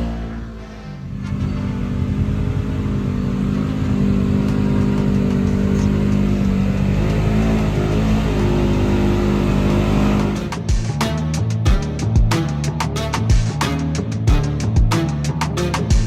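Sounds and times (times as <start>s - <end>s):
atv engine running: 0.0s - 10.6s.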